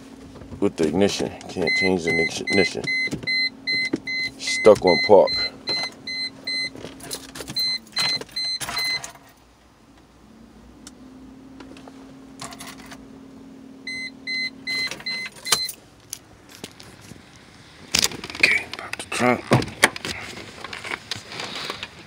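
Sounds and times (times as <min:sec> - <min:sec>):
car warning chime beeping: 0:01.6 - 0:06.8, 0:07.5 - 0:09.1, 0:13.8 - 0:15.8.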